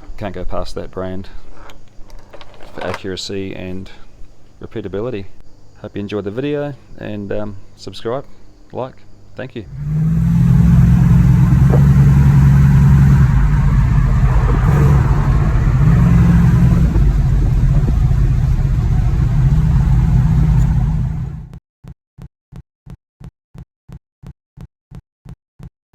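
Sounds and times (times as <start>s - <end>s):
short pulses: 9.6s - 21.5s
car engine droning: 9.7s - 21.5s.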